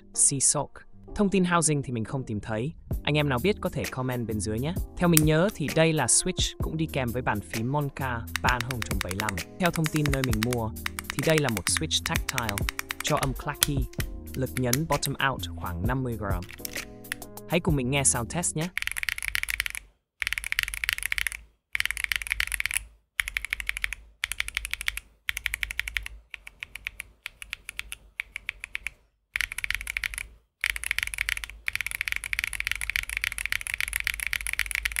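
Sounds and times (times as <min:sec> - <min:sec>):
mechanical keyboard typing: 0:08.2 - 0:15.2, 0:16.3 - 0:17.3, 0:18.6 - 0:35.0.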